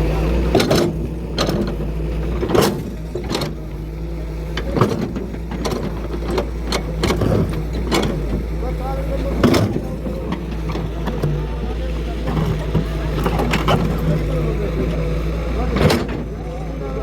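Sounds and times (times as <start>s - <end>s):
low mechanical hum: 0.0s - 17.0s
sharp knocks and clicks: 4.6s - 8.5s.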